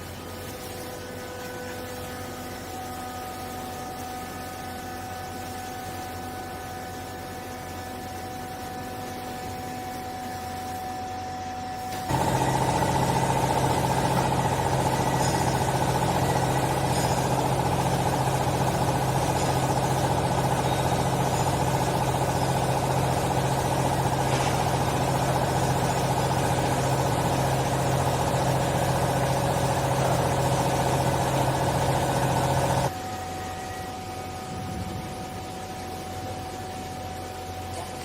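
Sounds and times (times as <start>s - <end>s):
motor and pump humming: 0.0s - 38.0s.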